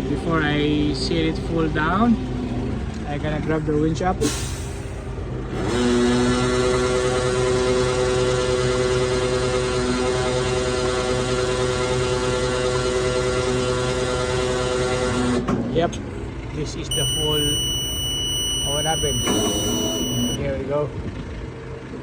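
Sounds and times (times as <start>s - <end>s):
crane engine and hydraulic pump whine: 16.8s - 20.4s.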